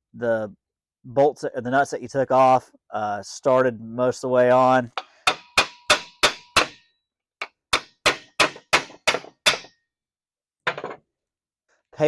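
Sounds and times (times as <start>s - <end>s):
hammer striking metal: 5.0s - 9.8s.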